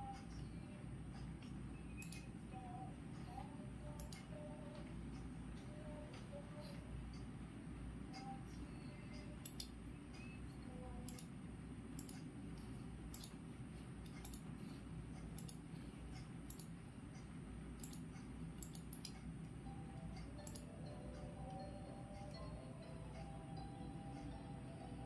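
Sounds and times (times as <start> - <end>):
light sharp clicks: 14.0 - 14.6.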